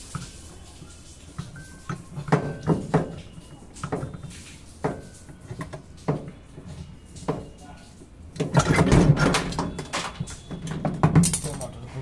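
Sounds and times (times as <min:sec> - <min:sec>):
hand tools clinking on metal: 0:11.2 - 0:11.8.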